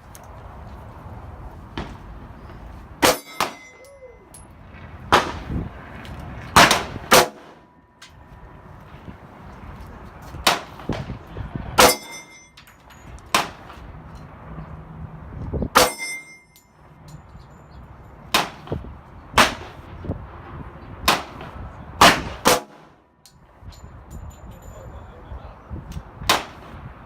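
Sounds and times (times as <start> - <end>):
high metallic ring: 3.0 - 4.5, 11.8 - 13.2, 15.8 - 17.7.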